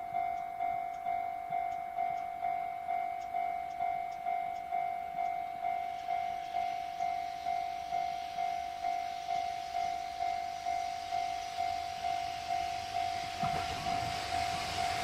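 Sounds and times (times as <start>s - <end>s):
approaching train rumble: 5.1s - 15.0s.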